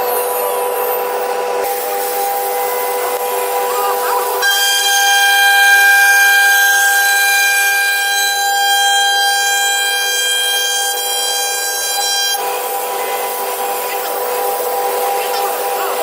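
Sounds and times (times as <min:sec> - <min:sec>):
router spindle high-pitched whine: 0:00.0 - 0:16.0.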